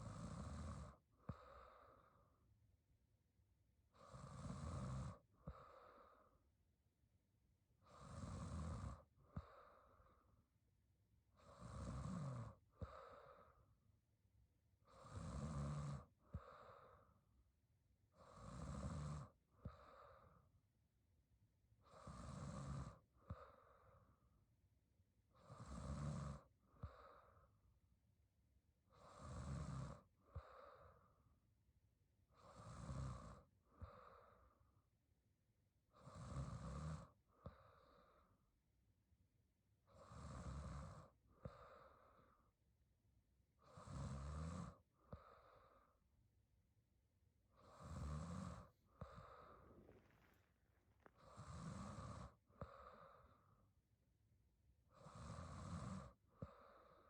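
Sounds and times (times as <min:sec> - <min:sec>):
woman snoring quietly: 0:00.0 - 0:02.1, 0:03.9 - 0:06.4, 0:07.8 - 0:10.1, 0:11.3 - 0:13.6, 0:14.8 - 0:17.2, 0:18.2 - 0:20.4, 0:21.8 - 0:24.2, 0:25.3 - 0:27.6, 0:28.9 - 0:31.3, 0:32.3 - 0:34.6, 0:36.0 - 0:38.4, 0:39.8 - 0:42.4, 0:43.6 - 0:46.0, 0:47.5 - 0:53.6, 0:54.8 - 0:57.0
soft breath: 0:00.8 - 0:02.5, 0:05.2 - 0:06.6, 0:09.2 - 0:10.5, 0:12.8 - 0:13.8, 0:16.2 - 0:17.4, 0:19.6 - 0:20.6, 0:23.2 - 0:24.4, 0:26.7 - 0:27.7, 0:30.3 - 0:31.3, 0:33.7 - 0:34.8, 0:37.3 - 0:38.6, 0:41.0 - 0:42.6, 0:44.8 - 0:46.2, 0:47.4 - 0:53.8, 0:56.2 - 0:57.0.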